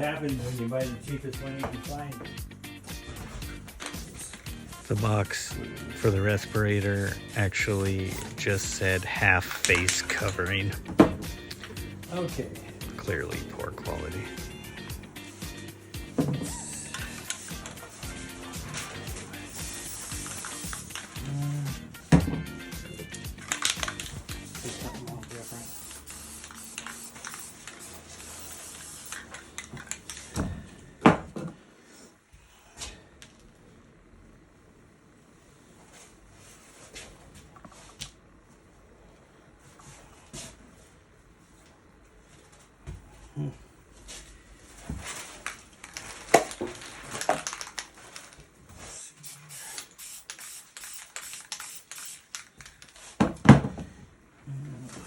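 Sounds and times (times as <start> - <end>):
items clattering and knocking: 6.4 - 14.3, 15.9 - 18.0, 22.0 - 22.6, 29.1 - 31.6, 44.8 - 48.6, 52.6 - 54.1
spray paint can hissing: 16.2 - 21.4, 22.7 - 29.4, 48.8 - 52.6.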